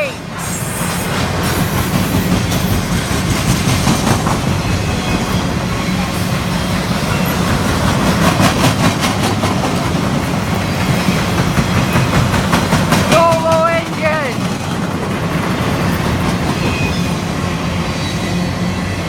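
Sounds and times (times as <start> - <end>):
freight train rumbling past: 0.0 - 19.0
wheels clicking over rail joints: 7.1 - 17.0.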